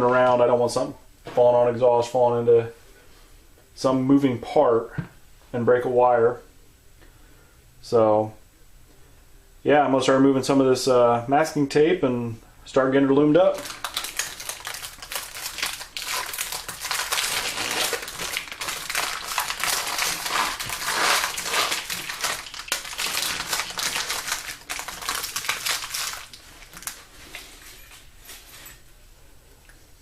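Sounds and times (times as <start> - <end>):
masking tape crackling peeling off: 13.6 - 27.1.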